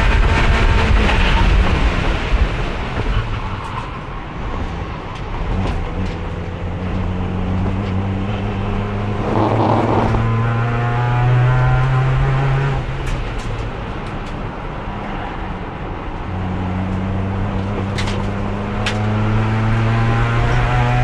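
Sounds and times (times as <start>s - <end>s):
race car engine revving: 5.5s - 12.9s.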